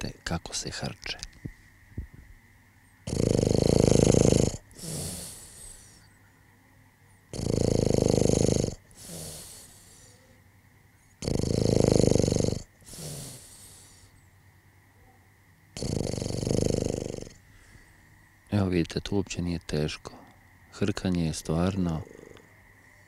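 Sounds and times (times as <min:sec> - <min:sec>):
person snoring: 0:03.1 - 0:06.0, 0:07.3 - 0:10.2, 0:11.2 - 0:14.0, 0:15.8 - 0:17.4.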